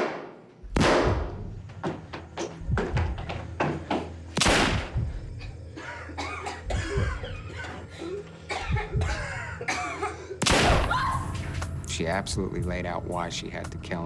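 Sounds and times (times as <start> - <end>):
low steady drone: 0.6 - 14.0
person coughing in distress: 5.8 - 10.3.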